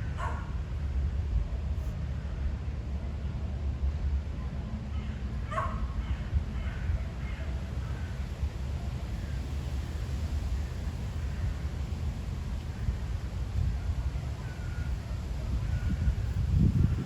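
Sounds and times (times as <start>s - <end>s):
wind rumble on microphone: 0.0s - 17.0s
distant dog barking: 0.1s - 0.5s, 5.5s - 6.2s.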